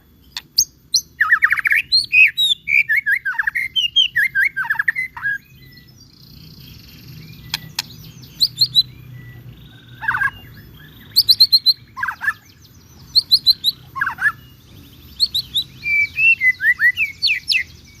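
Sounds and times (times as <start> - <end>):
bird singing whistled notes: 0.0 - 18.0
sharp clicks: 7.4 - 8.0.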